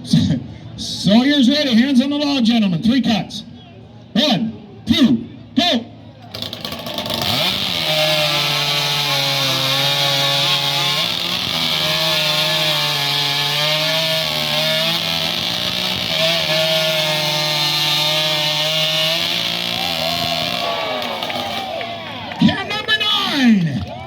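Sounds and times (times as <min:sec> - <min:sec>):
chainsaws cutting log: 0:06.3 - 0:22.6.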